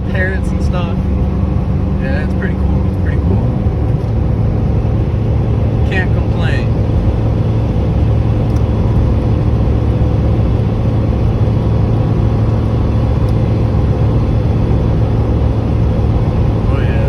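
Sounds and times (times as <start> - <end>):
car engine cruising: 0.0 - 17.0.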